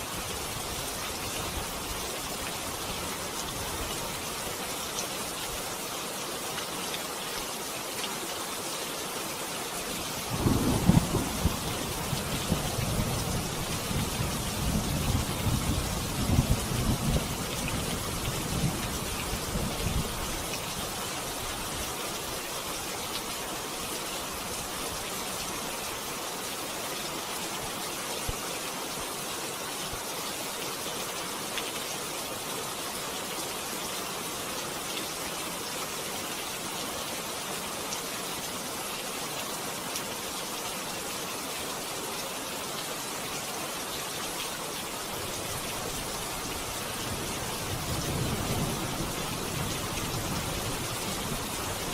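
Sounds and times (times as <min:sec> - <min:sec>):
steady rain falling: 0:00.0 - 0:51.9
low rumble of thunder: 0:10.3 - 0:20.2.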